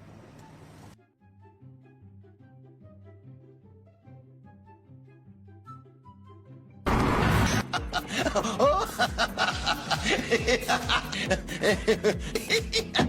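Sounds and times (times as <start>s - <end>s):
loud music with fast beat: 7.4s - 13.0s
voices laughing: 7.6s - 13.0s.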